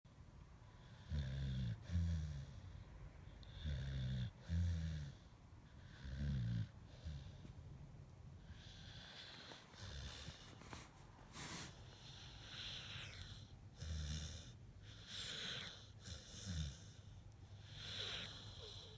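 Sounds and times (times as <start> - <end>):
dog snoring: 0.7 - 2.7, 3.4 - 7.5, 8.5 - 18.9.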